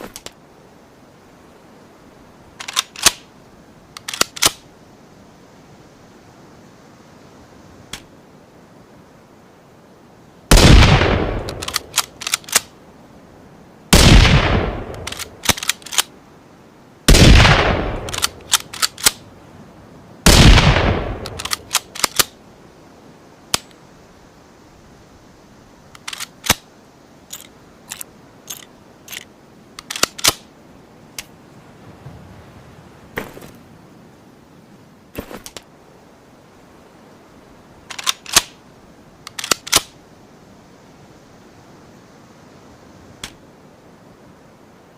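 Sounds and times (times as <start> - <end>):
rifle handling clicks: 2.6 - 3.2, 3.9 - 4.6, 11.4 - 12.7, 14.9 - 16.1, 18.0 - 19.2, 21.2 - 22.4, 26.0 - 26.6, 27.3 - 30.5, 37.9 - 38.6, 39.2 - 40.0, 43.2 - 43.4
rifle shots: 10.5 - 12.4, 14.0 - 15.8, 17.1 - 19.2, 20.3 - 22.3
rifle bolt clicking: 21.2 - 22.3.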